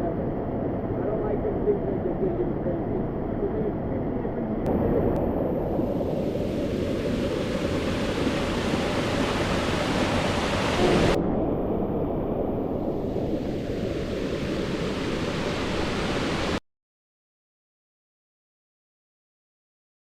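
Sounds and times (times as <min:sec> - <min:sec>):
rushing flowing water: 0:04.7 - 0:11.2, 0:12.1 - 0:16.6.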